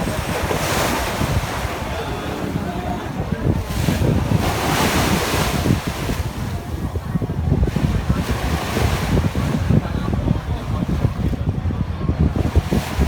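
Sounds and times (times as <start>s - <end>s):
water washing along hull: 0.0s - 13.0s
wind buffeting microphone: 0.0s - 13.0s.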